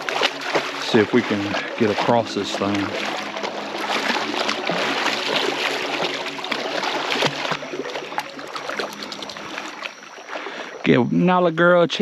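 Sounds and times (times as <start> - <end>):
water splashing from wading: 0.0 - 11.8.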